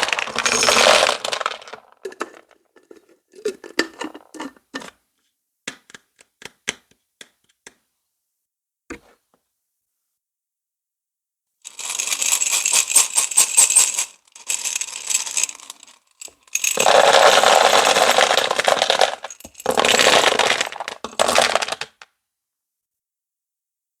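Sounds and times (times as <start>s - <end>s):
hard candies pouring and rattling: 0.0s - 4.5s, 11.7s - 22.0s.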